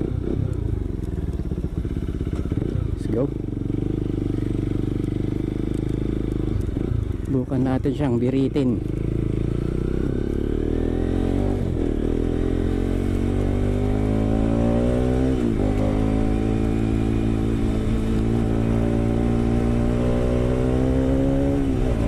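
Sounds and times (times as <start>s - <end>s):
motorcycle engine accelerating: 0.0s - 22.0s.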